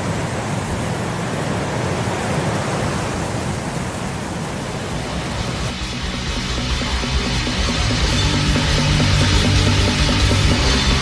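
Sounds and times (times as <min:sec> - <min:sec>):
snowstorm wind rushing: 0:00.0 - 0:05.8.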